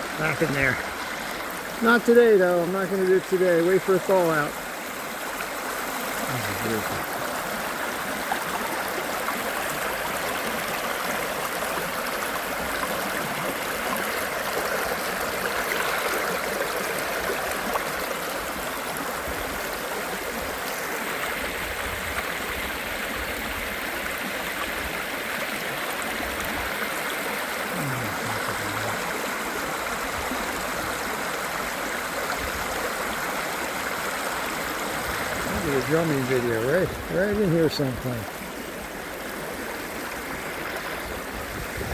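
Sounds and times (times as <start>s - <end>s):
creek water rushing over rapids: 0.0s - 41.9s.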